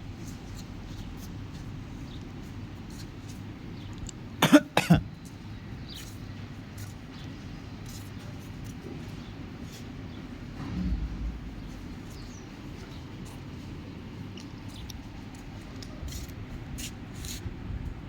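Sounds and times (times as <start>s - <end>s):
person coughing: 4.4s - 5.1s
low rumble: 10.6s - 12.7s.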